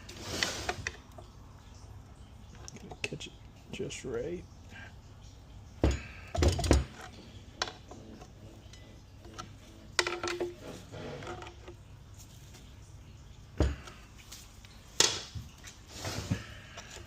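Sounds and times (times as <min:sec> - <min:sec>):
metal tools clinking on metal: 0:05.8 - 0:11.8.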